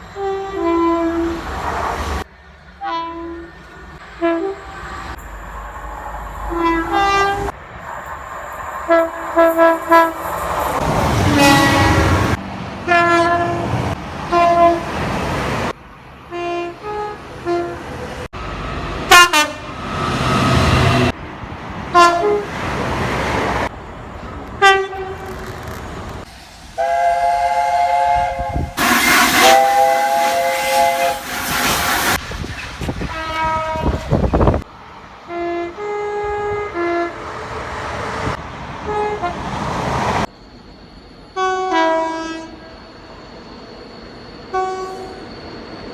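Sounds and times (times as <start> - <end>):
rushing rumble of passing trains: 0.0 - 45.9
train horn blasts: 0.1 - 1.5, 2.8 - 7.6, 8.8 - 10.3, 11.0 - 15.0, 16.3 - 17.9, 19.1 - 19.8, 21.9 - 22.5, 24.6 - 25.3, 26.8 - 31.5, 33.1 - 34.6, 35.3 - 37.3, 38.9 - 39.4, 41.4 - 42.7, 44.5 - 45.2.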